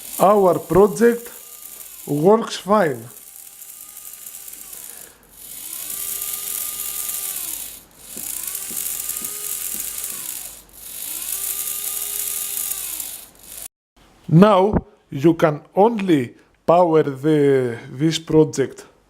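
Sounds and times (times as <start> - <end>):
servo motor gears whirring: 0.0 - 13.7.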